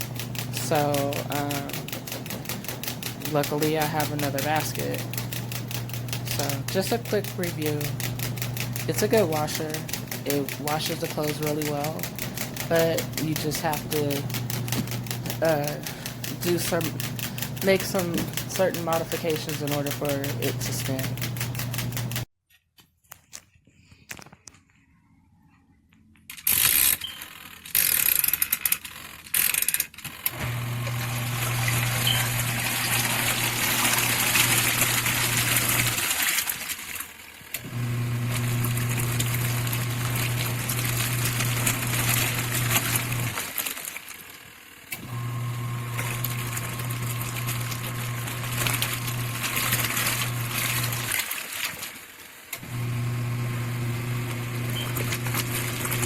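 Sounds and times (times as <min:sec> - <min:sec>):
water churning: 0:00.0 - 0:21.3, 0:30.5 - 0:37.2, 0:37.8 - 0:44.3, 0:45.1 - 0:52.1, 0:54.2 - 0:56.0
washing machine motor humming: 0:00.0 - 0:22.3, 0:30.2 - 0:44.0, 0:44.9 - 0:51.6, 0:52.5 - 0:56.0.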